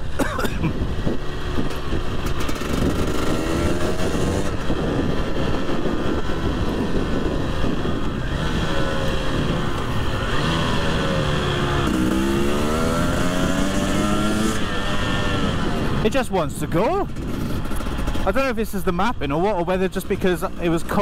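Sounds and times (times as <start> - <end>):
low wind rumble: 0.0 - 21.0
dirt bike engine revving: 0.7 - 16.0.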